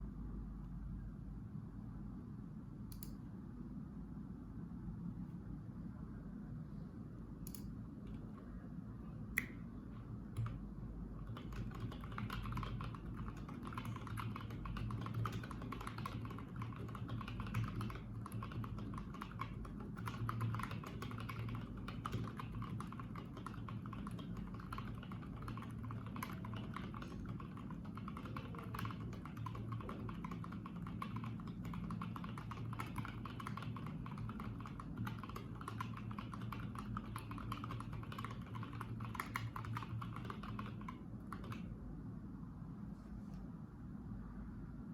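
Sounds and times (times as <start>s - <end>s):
low steady hum: 0.0s - 44.9s
mechanical keyboard typing: 10.4s - 41.7s.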